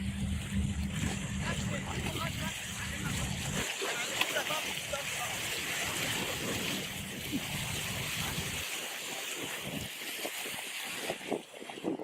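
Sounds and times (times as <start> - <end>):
low rumble: 0.0 - 3.8
sea water splashing: 0.0 - 12.0.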